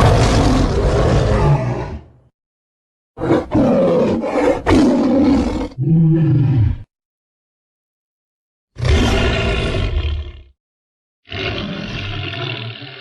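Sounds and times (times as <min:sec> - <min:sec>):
animal roaring: 0:00.0 - 0:02.2, 0:03.2 - 0:06.9, 0:08.8 - 0:10.6, 0:11.3 - 0:13.0.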